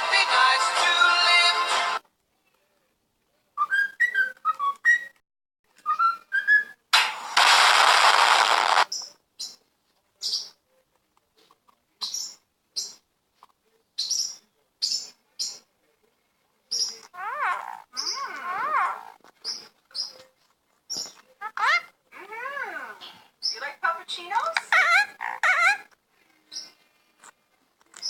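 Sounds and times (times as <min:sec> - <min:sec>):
harsh noisy burst: 0:07.0 - 0:08.9.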